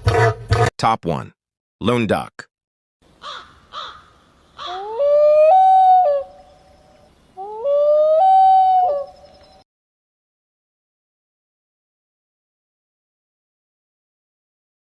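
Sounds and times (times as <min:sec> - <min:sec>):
loon calling: 0:03.2 - 0:09.6.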